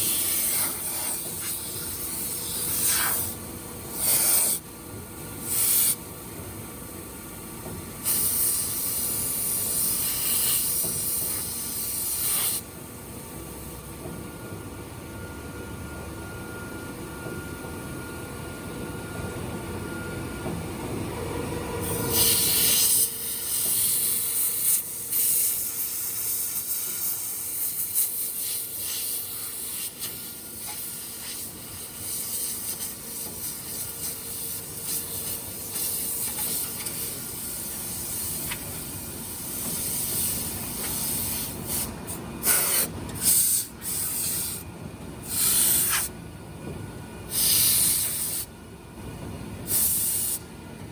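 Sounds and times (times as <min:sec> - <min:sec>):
compressed air hissing: 0:00.0 - 0:04.6, 0:05.4 - 0:06.0, 0:08.0 - 0:12.7, 0:21.8 - 0:44.6, 0:45.2 - 0:46.1, 0:47.3 - 0:48.5, 0:49.7 - 0:50.5.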